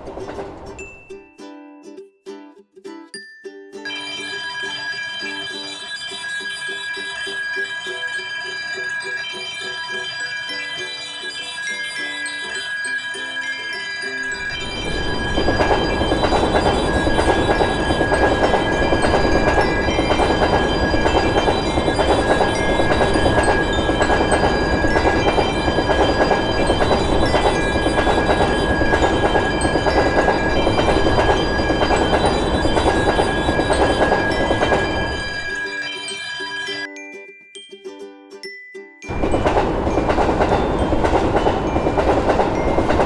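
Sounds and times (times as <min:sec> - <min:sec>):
wheels clattering over rail joints: 0:00.0 - 0:00.9, 0:14.2 - 0:35.7, 0:39.1 - 0:43.0
train rumbling: 0:00.0 - 0:01.0, 0:14.1 - 0:35.8, 0:39.1 - 0:43.0
crossing warning bell ringing: 0:03.9 - 0:37.2, 0:39.1 - 0:43.0.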